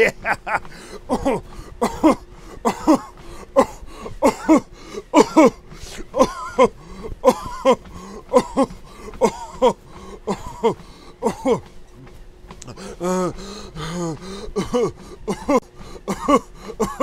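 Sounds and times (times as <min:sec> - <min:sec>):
person coughing: 0:00.0 - 0:11.7, 0:12.6 - 0:17.0.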